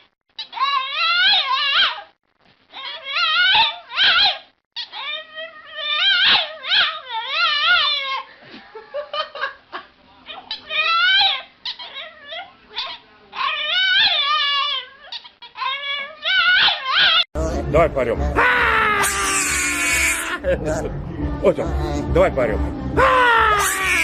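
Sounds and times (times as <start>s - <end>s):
animal crying: 0.4s - 2.1s, 2.7s - 8.3s, 10.3s - 17.2s, 18.4s - 20.4s, 23.0s - 24.0s.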